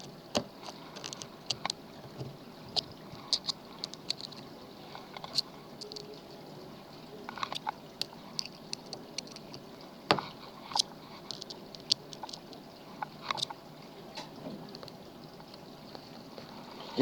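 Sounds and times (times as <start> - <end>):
lock pick clicking and scratching: 0.0 - 6.1, 7.4 - 9.7, 10.7 - 12.6, 13.2 - 13.5.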